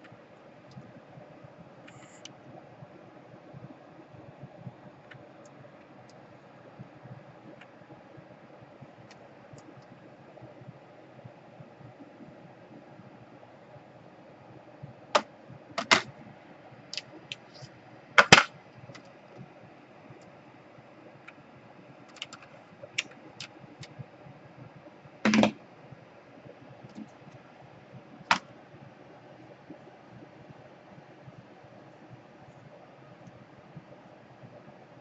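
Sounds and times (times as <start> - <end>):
low steady hiss: 0.0 - 35.0
laptop parts and tools clicking: 15.2 - 16.1, 16.9 - 19.4, 22.1 - 24.0, 25.3 - 25.6.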